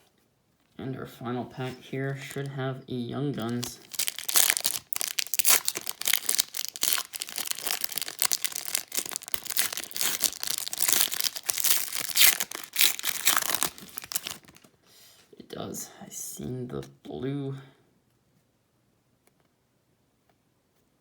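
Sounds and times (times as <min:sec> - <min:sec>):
wrapper crinkling: 0:02.1 - 0:02.6, 0:03.3 - 0:14.7
foil pack tearing open: 0:03.4 - 0:14.7.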